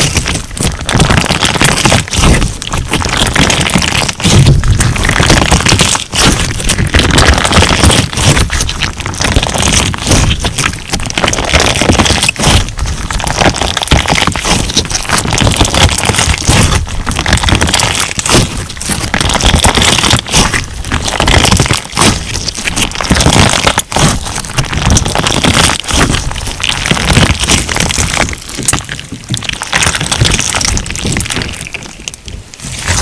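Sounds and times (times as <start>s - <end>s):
slime crackling and popping: 0.0s - 33.0s.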